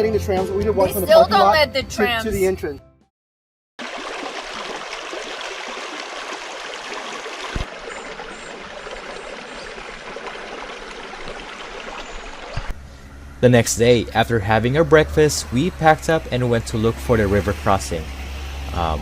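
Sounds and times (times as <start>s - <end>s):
stream water flowing: 3.8s - 13.4s, 14.1s - 18.9s.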